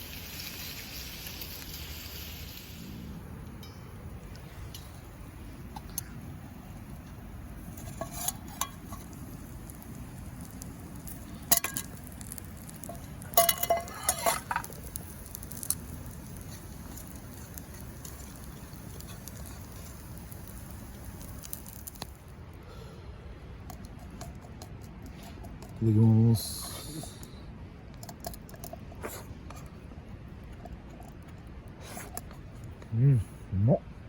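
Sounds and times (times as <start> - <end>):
low background noise: 0.0 - 34.0
metal cookware clinking: 11.5 - 12.0, 12.8 - 14.8.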